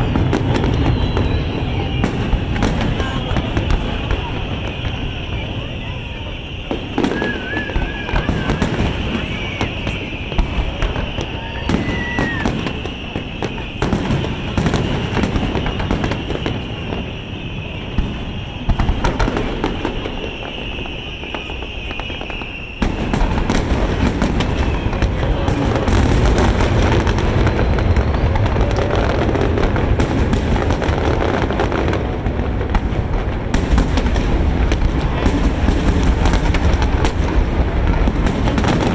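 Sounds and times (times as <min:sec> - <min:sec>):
firework shells booming: 0:00.0 - 0:38.9
fireworks crackling: 0:00.0 - 0:38.9.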